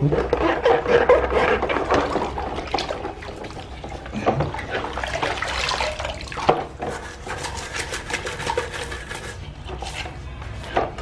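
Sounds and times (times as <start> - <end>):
brush scrubbing plastic: 0.0 - 10.3.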